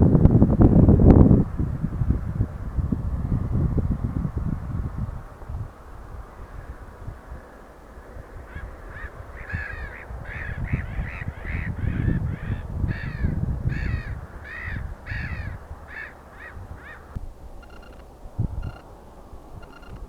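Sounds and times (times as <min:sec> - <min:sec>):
wind rumbling on microphone: 0:00.0 - 0:20.0
crow cawing: 0:08.5 - 0:18.0.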